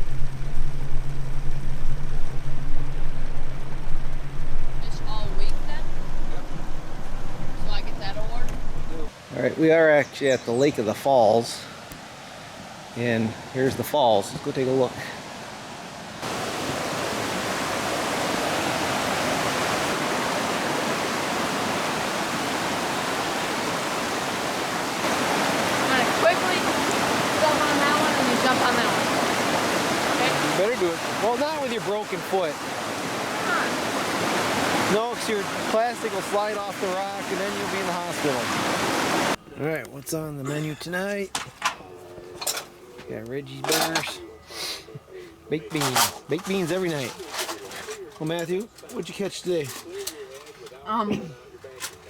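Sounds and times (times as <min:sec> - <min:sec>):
waterfall rushing: 0:11.5 - 0:39.4.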